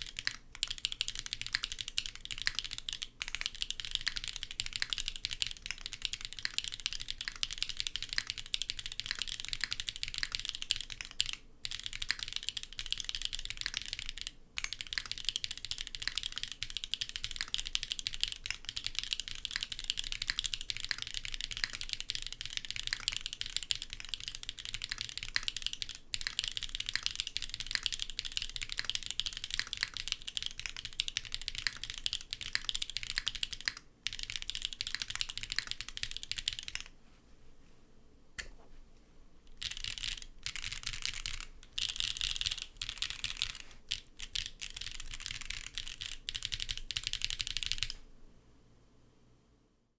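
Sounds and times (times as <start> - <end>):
mechanical keyboard typing: 0.0 - 36.9, 39.5 - 48.0.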